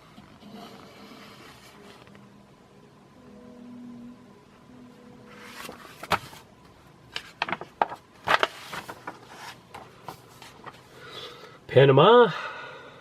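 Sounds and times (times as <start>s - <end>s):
paper pages rustling: 5.3s - 6.5s, 7.1s - 10.9s.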